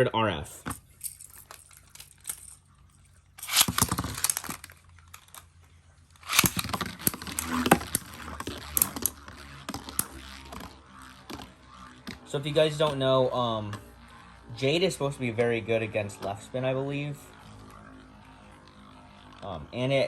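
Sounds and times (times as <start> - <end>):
ripcord launcher tearing rattle: 0.7 - 2.7, 3.4 - 5.5, 6.2 - 13.1
spinning tops clattering: 0.7 - 5.6, 6.2 - 13.8.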